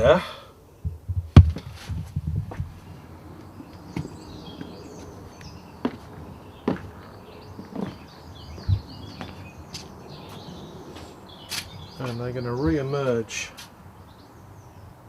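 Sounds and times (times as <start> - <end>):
birds chirping: 0.0 - 1.8, 2.5 - 15.0
low thump: 0.8 - 2.7.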